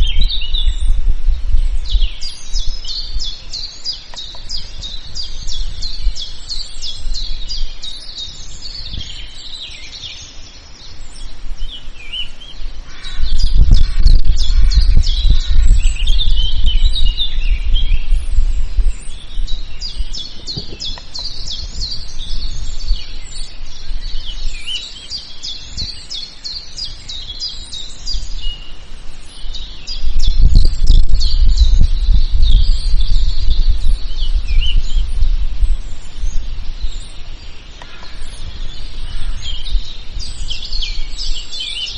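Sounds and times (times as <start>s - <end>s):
birds singing and chirping: 0.0s - 41.9s
loud low rumble: 13.1s - 20.3s, 30.0s - 37.0s.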